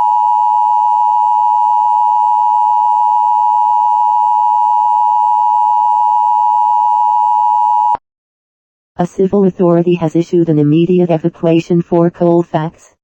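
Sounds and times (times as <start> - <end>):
two-tone alarm: 0.0 - 8.0.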